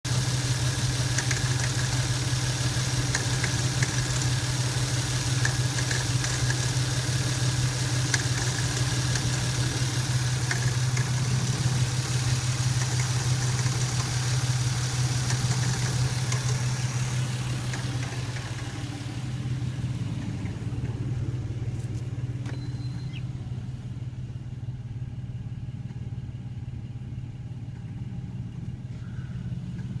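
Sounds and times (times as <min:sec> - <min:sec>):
car engine idling: 0:00.0 - 0:30.0
engine rattling: 0:00.0 - 0:30.0
light ticks: 0:01.1 - 0:01.8, 0:05.4 - 0:06.6.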